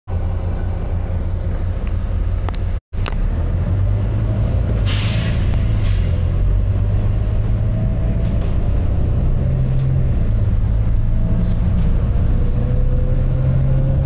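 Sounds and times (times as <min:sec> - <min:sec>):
bus diesel engine droning: 0:00.1 - 0:14.0
compressed air hiss: 0:04.9 - 0:05.4.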